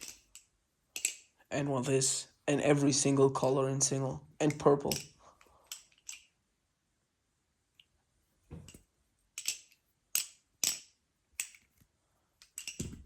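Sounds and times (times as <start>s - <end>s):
butterfly knife handles clicking: 0.0s - 1.3s, 4.8s - 6.3s, 9.4s - 11.8s, 12.4s - 13.0s.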